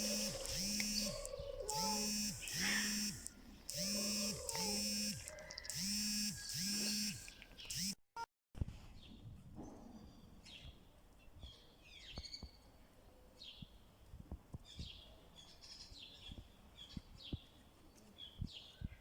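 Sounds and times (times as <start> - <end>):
birds chirping: 0.0 - 7.9.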